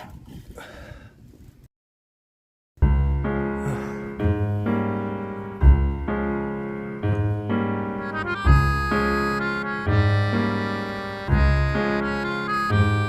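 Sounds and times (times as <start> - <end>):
keyboard chords over bass line: 2.8 - 13.0.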